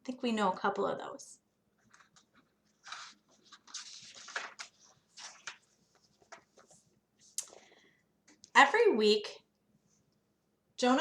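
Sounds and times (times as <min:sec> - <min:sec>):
paper pages rustling: 0:01.8 - 0:07.8.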